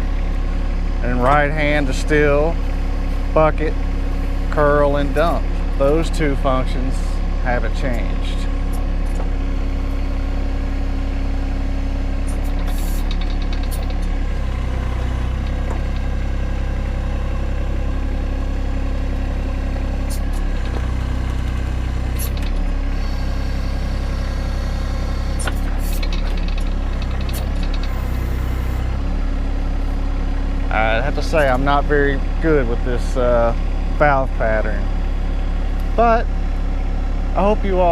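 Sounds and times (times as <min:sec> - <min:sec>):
tractor diesel engine running: 0:00.0 - 0:37.9
short clanks: 0:12.2 - 0:14.2, 0:25.3 - 0:28.9.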